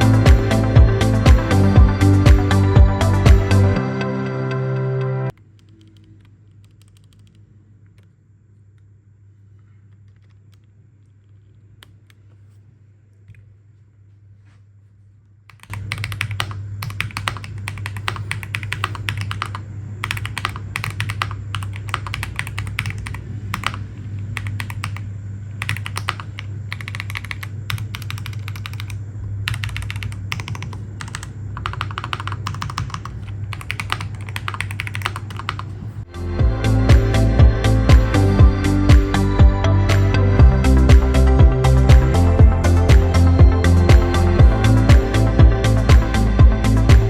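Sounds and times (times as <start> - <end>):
mechanical keyboard typing: 5.4 - 7.4, 15.5 - 36.0.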